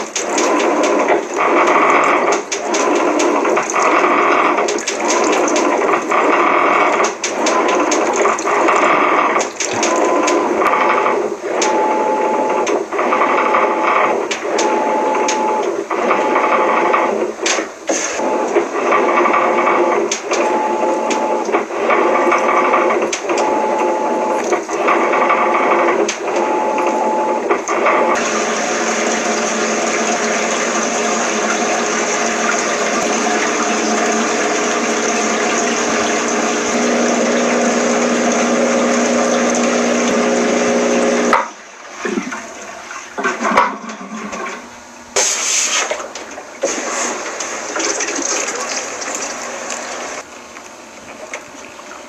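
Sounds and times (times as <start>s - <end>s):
water sloshing: 0.0s - 10.6s, 41.5s - 44.8s
washing machine motor whine: 0.0s - 52.0s
clicks: 20.1s - 21.7s.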